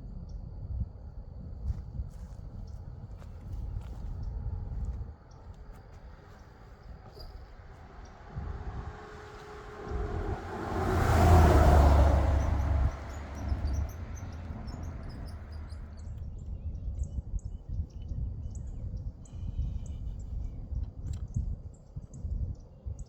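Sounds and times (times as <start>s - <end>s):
birds chirping: 5.3s - 16.7s
vehicle passing by: 7.0s - 16.2s.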